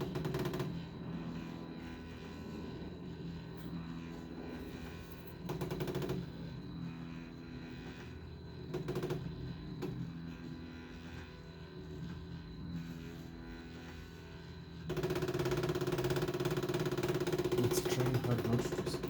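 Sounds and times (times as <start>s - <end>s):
rapid rattling: 15.0s - 19.0s
stepper motor humming: 15.0s - 19.0s.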